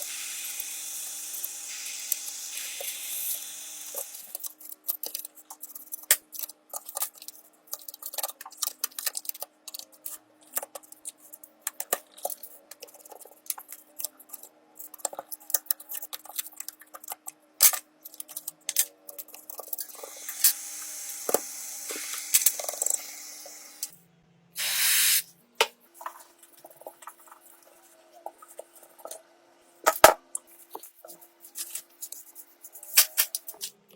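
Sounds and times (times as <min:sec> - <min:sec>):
hissing spray: 0:00.0 - 0:04.4, 0:20.0 - 0:23.9, 0:24.6 - 0:25.3.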